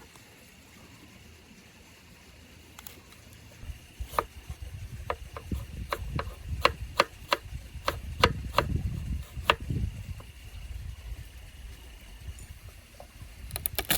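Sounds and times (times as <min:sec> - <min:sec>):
knife chopping on cutting board: 0:04.1 - 0:04.3, 0:05.1 - 0:09.6.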